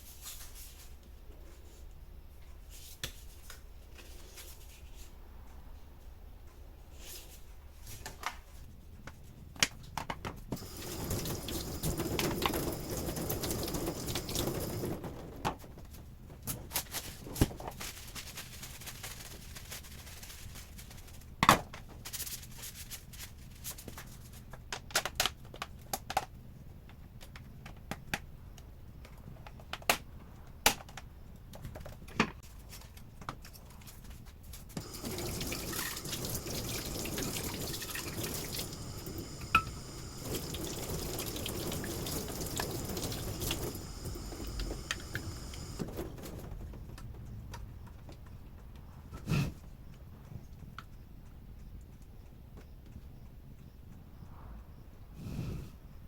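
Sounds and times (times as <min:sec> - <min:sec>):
tap water running into sink: 0:10.6 - 0:15.0, 0:34.8 - 0:45.9.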